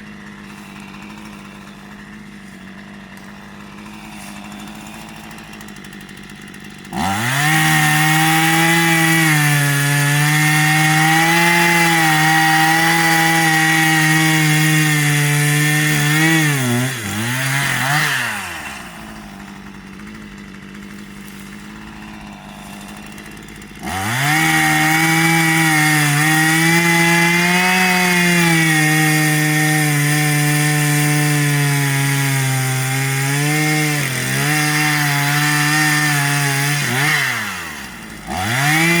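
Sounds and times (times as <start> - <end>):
chainsaw cutting wood: 0.0 - 39.0.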